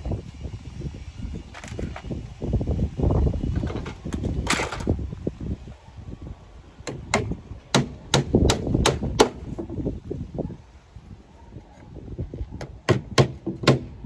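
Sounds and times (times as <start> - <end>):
sharp knocks on wood: 12.6 - 13.9.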